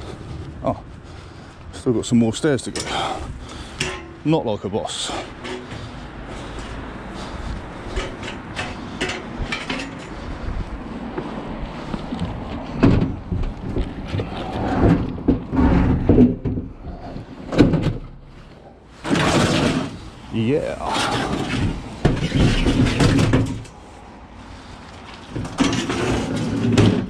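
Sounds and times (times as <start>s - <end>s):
load bumping down stairs: 12.2s - 18.2s.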